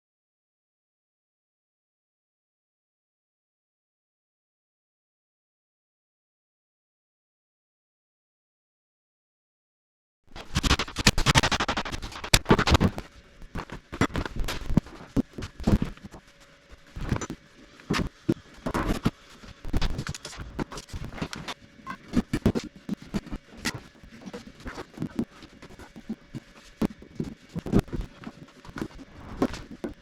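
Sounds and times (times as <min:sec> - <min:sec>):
faint steady hum: 0:10.3 - 0:30.0.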